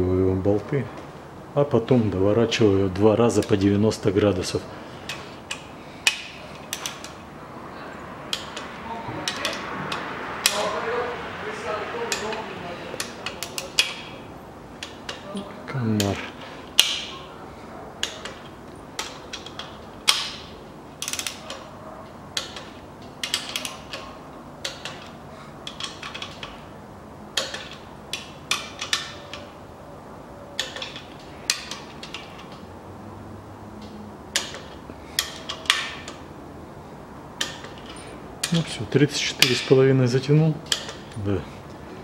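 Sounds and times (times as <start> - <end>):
torque wrench clicking: 5.1 - 7.2, 8.3 - 10.8, 12.1 - 14.2, 16.0 - 17.2, 18.0 - 21.7, 22.4 - 26.6, 27.4 - 29.5, 30.6 - 32.7, 33.8 - 36.2, 37.4 - 38.7, 40.7 - 41.2.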